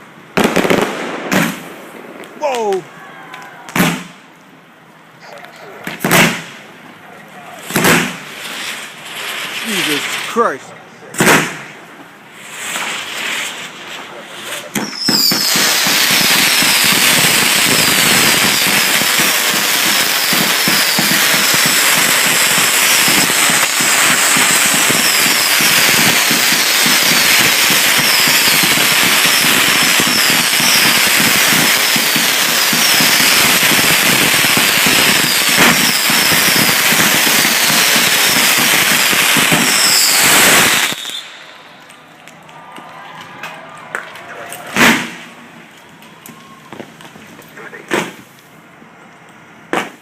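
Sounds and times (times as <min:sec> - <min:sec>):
fireworks bangs and crackling: 0:00.0 - 0:04.4, 0:05.6 - 0:48.4, 0:49.7 - 0:50.0.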